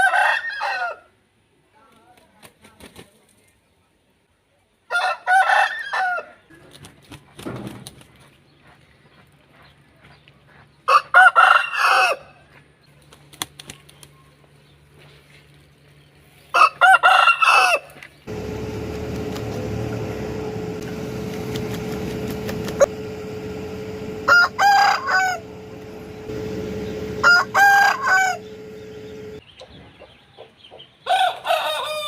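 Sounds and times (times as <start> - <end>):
roosters crowing: 0.0 - 1.0, 4.9 - 6.4, 10.9 - 12.3, 16.6 - 29.4, 31.1 - 32.0
steady hum: 18.3 - 29.4.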